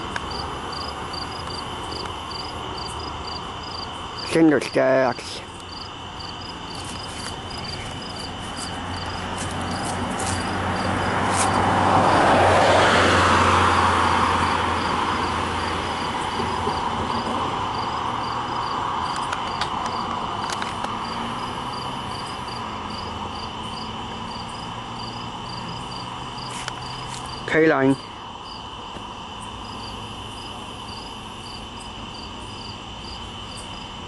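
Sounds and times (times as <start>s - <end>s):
crickets chirping: 0.0s - 34.0s
freight train rumbling past: 7.4s - 19.1s.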